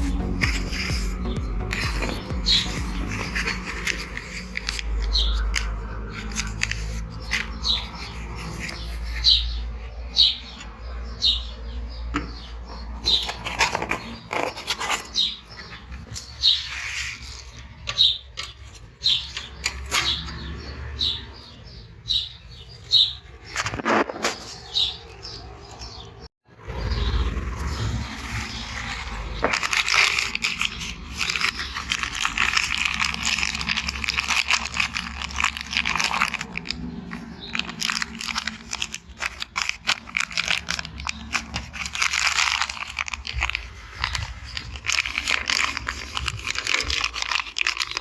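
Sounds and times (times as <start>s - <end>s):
bird chirping: 0.0s - 48.0s.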